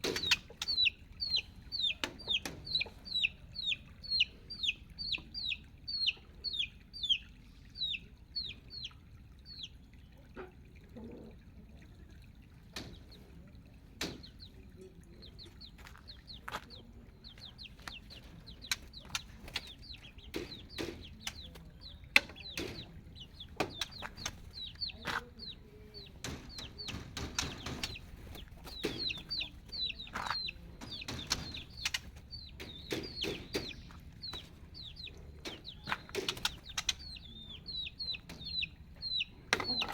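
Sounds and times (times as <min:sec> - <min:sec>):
sharp clicks and knocks: 0:00.0 - 0:00.8, 0:17.6 - 0:25.4, 0:26.0 - 0:37.2
baby chicks peeping: 0:00.0 - 0:09.8, 0:14.0 - 0:39.9.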